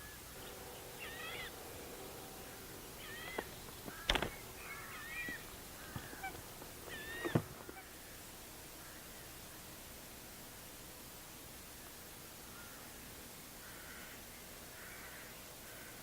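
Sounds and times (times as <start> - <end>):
waterfowl honking: 0.0 - 8.2.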